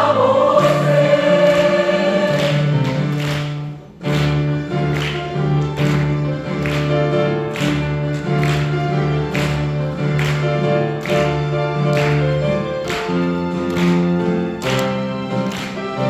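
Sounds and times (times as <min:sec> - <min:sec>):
choir singing held chord: 0:00.0 - 0:03.0.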